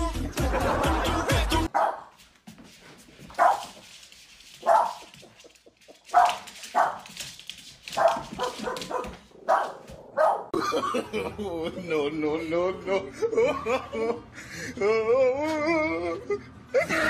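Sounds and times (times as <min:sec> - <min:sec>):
dog barking: 0:01.7 - 0:02.2, 0:03.4 - 0:03.8, 0:04.6 - 0:05.1, 0:06.1 - 0:07.1, 0:08.0 - 0:10.6.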